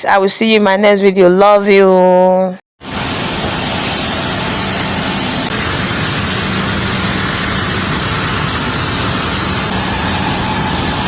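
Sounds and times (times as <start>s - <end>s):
faint high whine: 2.8s - 11.0s
engine running loudly: 2.9s - 11.0s.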